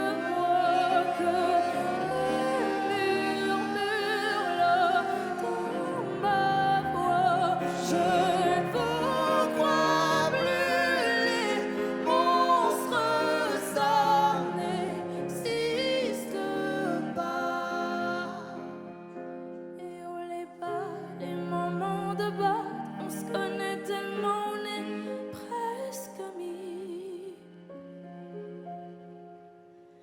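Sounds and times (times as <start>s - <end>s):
pop ballad duet singing: 0.0s - 18.8s, 19.8s - 27.4s
musical accompaniment: 0.0s - 19.5s.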